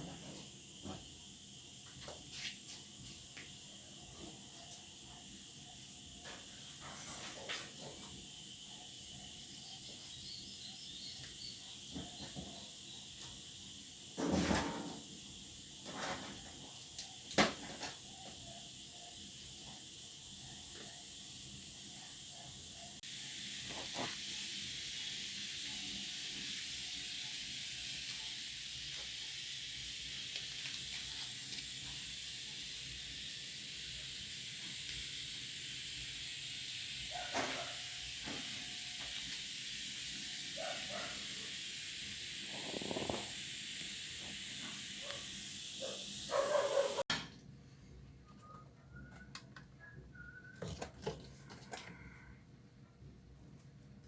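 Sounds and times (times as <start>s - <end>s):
steady high hiss: 0.0s - 47.1s.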